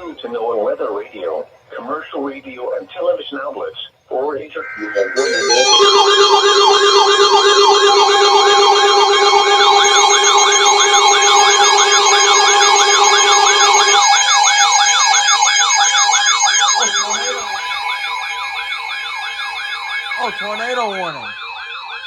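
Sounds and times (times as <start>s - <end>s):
electronic siren sweeps: 4.4s - 22.0s
steady alert tones: 4.6s - 21.7s.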